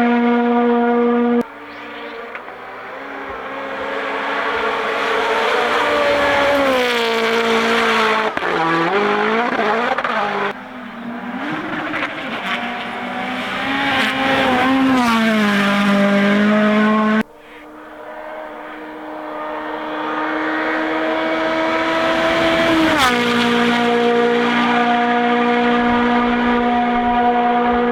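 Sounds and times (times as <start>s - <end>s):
rally car engine at full throttle: 0.0s - 27.9s.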